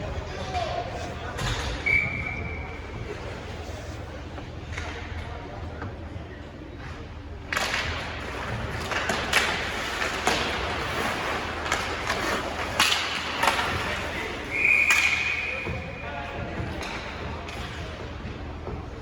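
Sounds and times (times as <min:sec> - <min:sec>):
whistle blast: 0:01.8 - 0:02.8, 0:14.5 - 0:15.6
hockey sticks and puck clacking: 0:07.0 - 0:19.0
skates scraping on ice: 0:08.0 - 0:15.6.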